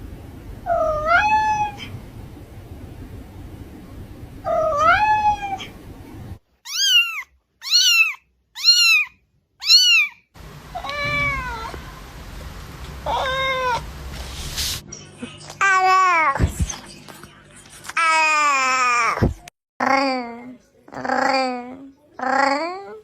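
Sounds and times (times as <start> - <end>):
cat meowing: 0.7 - 1.9, 4.5 - 5.7, 6.6 - 11.9, 13.0 - 13.8.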